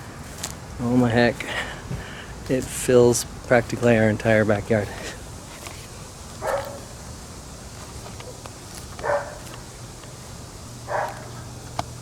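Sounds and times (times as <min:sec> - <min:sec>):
dog barking: 0:06.4 - 0:06.9, 0:09.0 - 0:09.5, 0:10.9 - 0:11.3.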